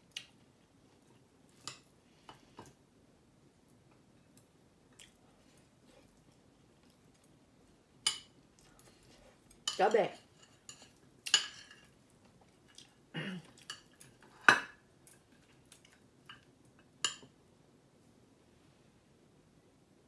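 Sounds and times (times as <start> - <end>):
utensils clinking against a bowl: 8.1 - 11.9.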